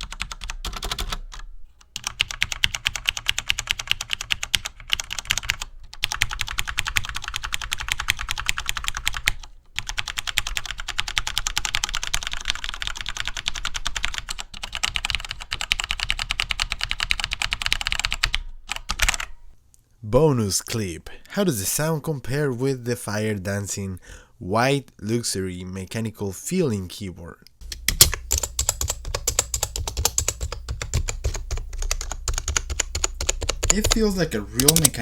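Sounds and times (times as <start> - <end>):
mechanical keyboard typing: 0.0 - 19.3, 27.6 - 35.0.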